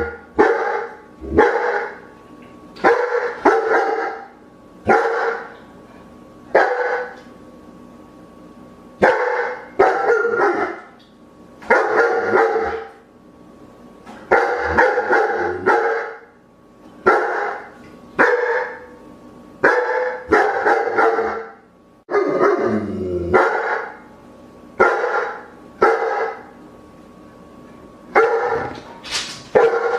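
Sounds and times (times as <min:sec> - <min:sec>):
dog barking: 0:00.0 - 0:02.0, 0:02.8 - 0:04.3, 0:04.9 - 0:05.6, 0:06.5 - 0:07.2, 0:09.0 - 0:10.9, 0:11.6 - 0:13.0, 0:14.3 - 0:16.3, 0:17.0 - 0:18.9, 0:19.6 - 0:22.6, 0:23.3 - 0:24.0, 0:24.8 - 0:26.5, 0:28.2 - 0:28.8, 0:29.5 - 0:29.9.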